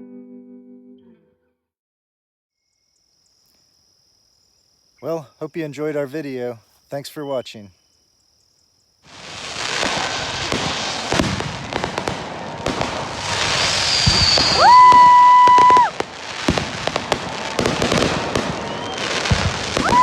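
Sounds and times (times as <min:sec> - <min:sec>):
fireworks crackling and popping: 0:09.0 - 0:20.0
high falling whistle: 0:09.4 - 0:20.0.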